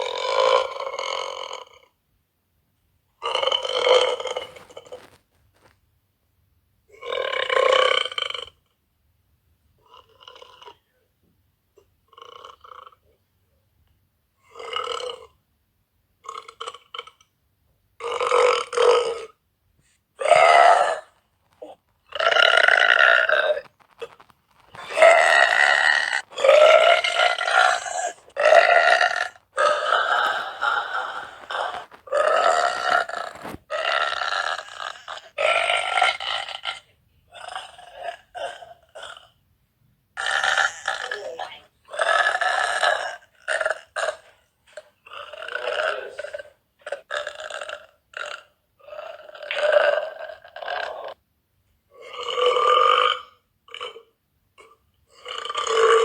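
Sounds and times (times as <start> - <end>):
girl burping loudly: 20.2 - 39.4, 40.2 - 51.2, 51.9 - 56.0.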